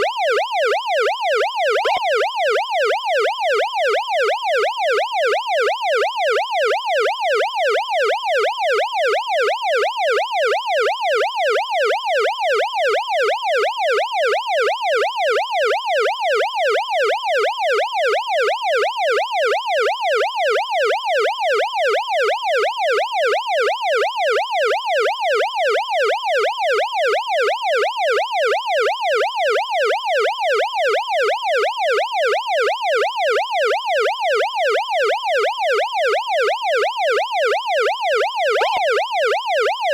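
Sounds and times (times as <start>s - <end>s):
police siren yelping: 1.7s - 2.4s, 38.5s - 39.1s.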